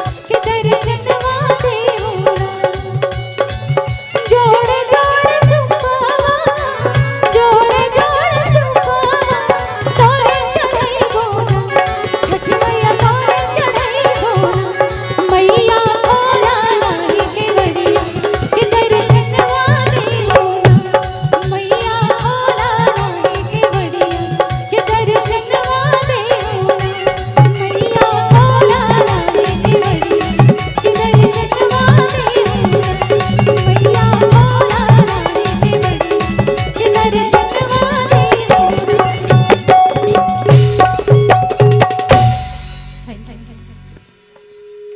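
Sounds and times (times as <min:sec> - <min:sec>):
hand drum beat: 0:00.0 - 0:43.3.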